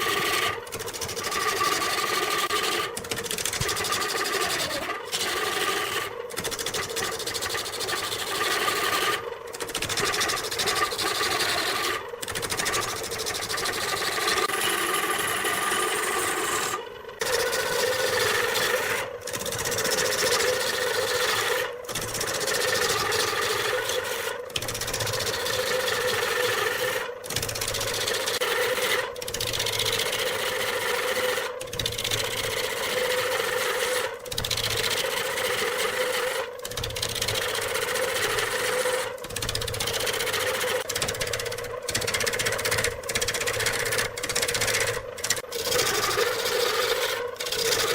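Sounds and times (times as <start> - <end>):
wood lathe running: 0.0 - 47.9
turning tool scraping wood: 31.0 - 47.9.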